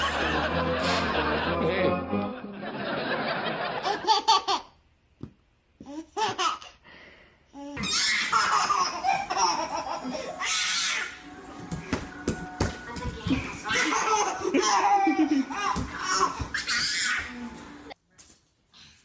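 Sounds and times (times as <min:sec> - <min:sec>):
baby laughing: 0:03.8 - 0:04.8, 0:05.8 - 0:06.8, 0:07.6 - 0:11.2, 0:13.4 - 0:17.4.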